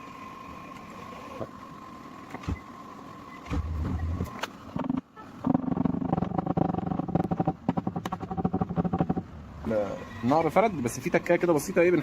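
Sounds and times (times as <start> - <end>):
steady hum: 0.0 - 12.0
rapid tapping on steel panel: 5.5 - 9.3.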